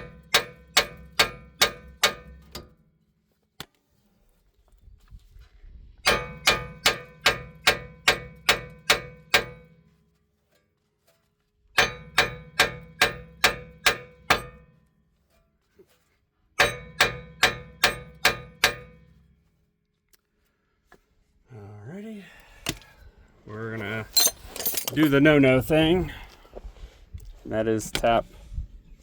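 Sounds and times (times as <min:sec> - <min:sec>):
metallic clangs ringing: 0:06.1 - 0:09.6, 0:11.8 - 0:14.7, 0:16.6 - 0:19.0, 0:24.1 - 0:25.4.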